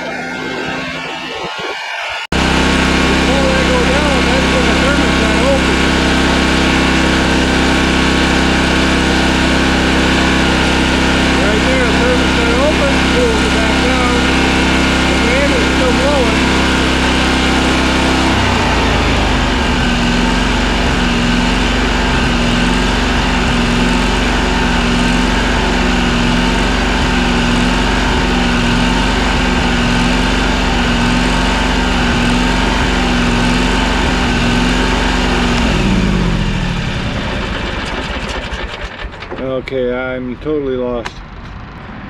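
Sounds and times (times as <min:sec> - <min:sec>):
mower engine running: 0:00.0 - 0:42.0.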